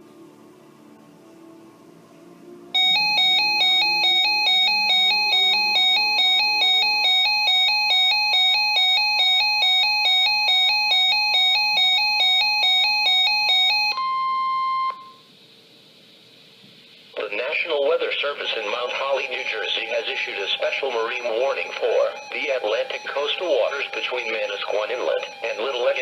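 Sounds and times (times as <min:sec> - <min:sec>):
steady loud alert tone: 0:02.7 - 0:15.2, 0:18.3 - 0:26.0
fast pulsing alarm beeps: 0:02.8 - 0:15.2, 0:18.4 - 0:26.0.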